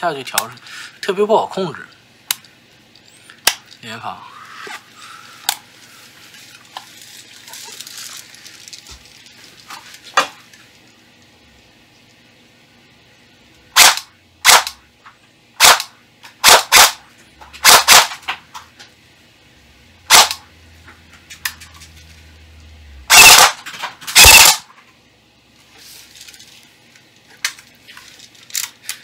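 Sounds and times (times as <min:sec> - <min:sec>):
airsoft gun firing: 0:13.8 - 0:14.8, 0:15.6 - 0:17.0, 0:17.6 - 0:18.2, 0:20.1 - 0:20.4, 0:23.1 - 0:24.7.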